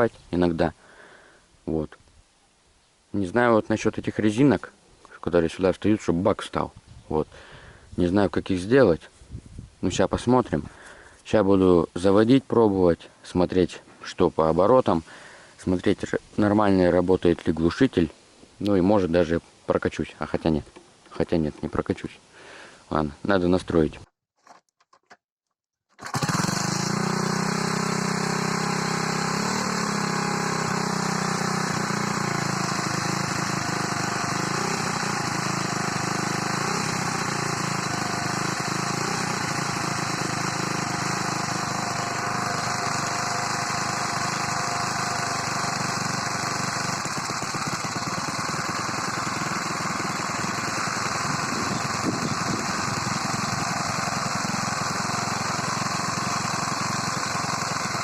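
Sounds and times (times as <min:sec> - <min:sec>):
moped engine idling: 0:26.0 - 0:58.0.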